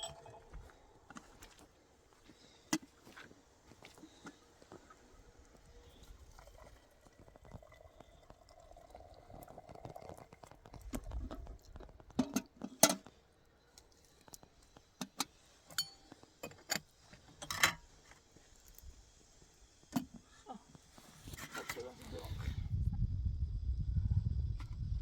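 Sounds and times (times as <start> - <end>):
objects clinking and knocking: 0.0 - 0.6.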